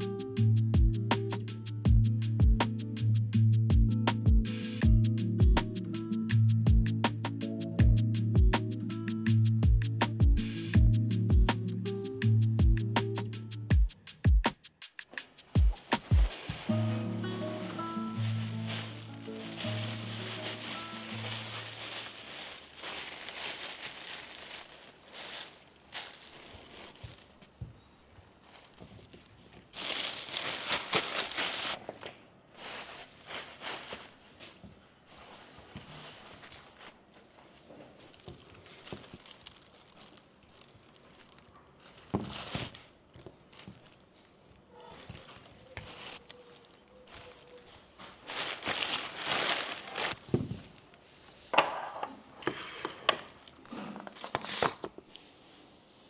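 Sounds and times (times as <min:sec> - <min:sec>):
packaging crinkling: 0:16.8 - 0:27.6, 0:28.2 - 0:34.6, 0:38.0 - 0:50.8.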